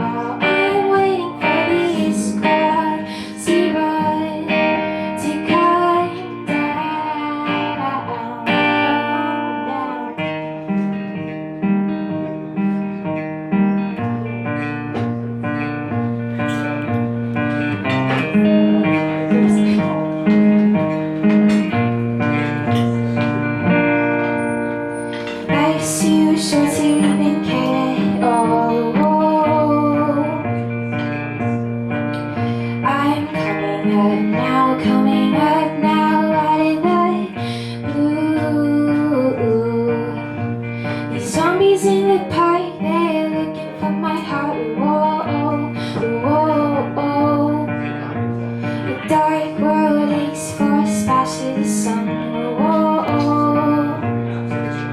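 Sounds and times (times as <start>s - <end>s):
woman singing: 0.0s - 10.9s, 17.8s - 20.3s, 24.9s - 31.6s, 32.4s - 48.2s, 48.8s - 54.2s
guitar strumming: 0.0s - 54.9s.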